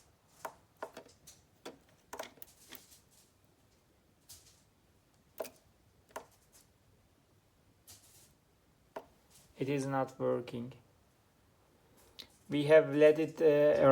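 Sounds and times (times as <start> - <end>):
light sharp clicks and taps: 5.4 - 6.4.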